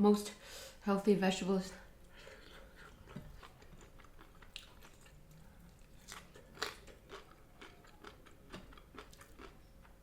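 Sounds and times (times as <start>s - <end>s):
person chewing crunchy food: 2.1s - 10.0s.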